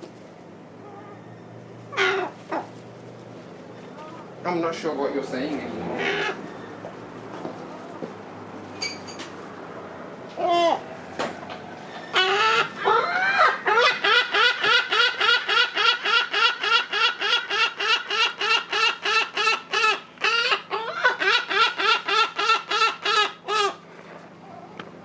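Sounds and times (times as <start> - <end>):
gull calling: 1.9 - 2.7, 5.8 - 6.8, 12.0 - 23.8.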